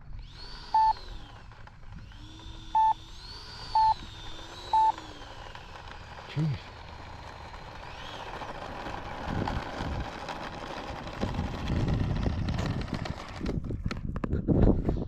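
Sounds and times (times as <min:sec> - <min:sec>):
wind buffeting microphone: 0:08.6 - 0:15.0.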